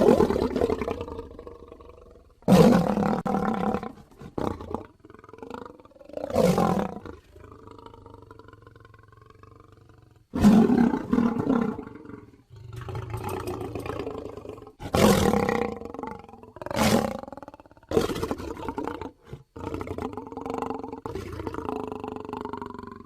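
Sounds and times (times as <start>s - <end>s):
dinosaur growl: 0.0s - 23.0s.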